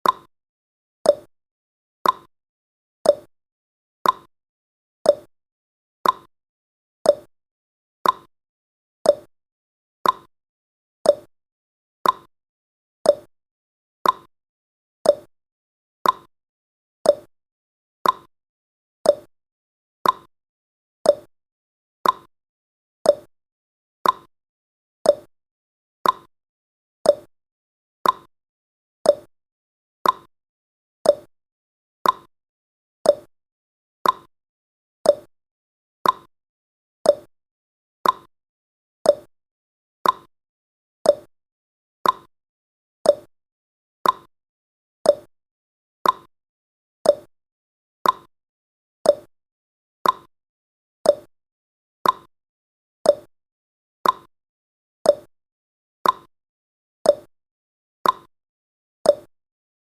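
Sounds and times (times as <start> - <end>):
clock ticking: 34.0 - 34.3, 42.0 - 42.3, 50.0 - 50.3.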